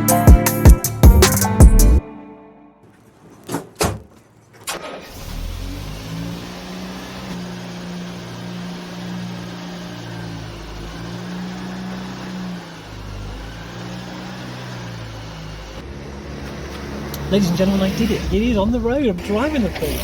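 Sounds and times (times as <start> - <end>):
car engine running while driving: 4.2 - 20.0.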